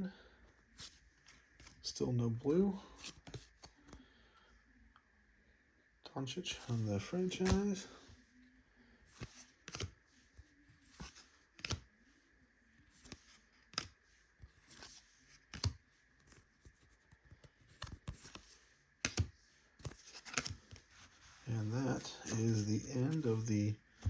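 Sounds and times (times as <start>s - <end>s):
trading cards clicking and tapping: 19.0s - 20.8s.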